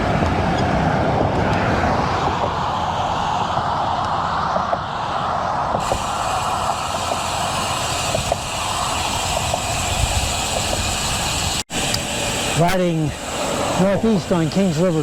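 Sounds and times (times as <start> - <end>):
wind rush over microphone: 0.0 - 12.5
bicycle tyre road noise: 0.0 - 15.0.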